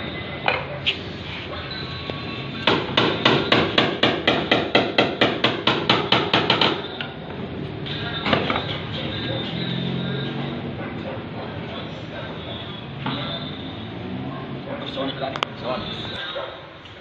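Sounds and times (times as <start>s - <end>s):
hammer tapping sheet metal: 2.6s - 6.9s.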